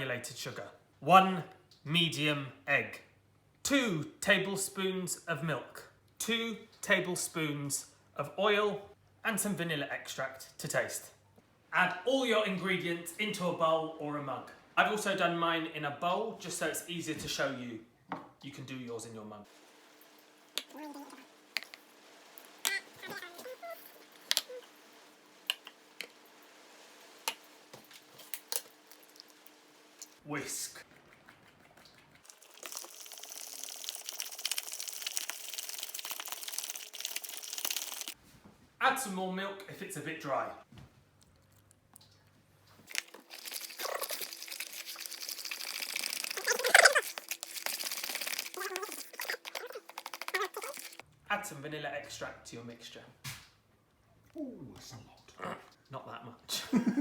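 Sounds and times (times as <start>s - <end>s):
whisk scraping against bowl: 43.4s - 51.0s
short squeaky wavering sounds: 46.3s - 47.2s.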